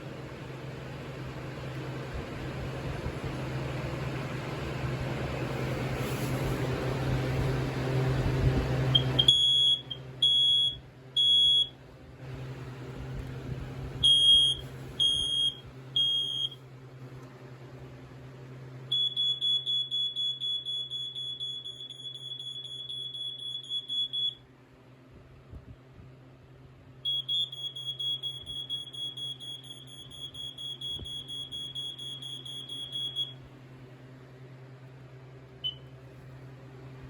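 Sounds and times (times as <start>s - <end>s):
alarm pulsing tone: 8.9s - 11.7s, 18.9s - 24.4s, 27.1s - 33.3s
smoke alarm shrill beeps: 8.9s - 11.8s, 14.0s - 16.6s, 18.9s - 24.4s, 27.0s - 33.4s.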